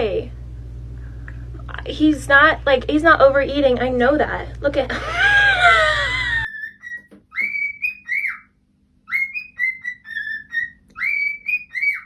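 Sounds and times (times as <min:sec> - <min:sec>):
low hum: 0:00.0 - 0:06.5
pet bird whistling a tune: 0:06.4 - 0:12.0.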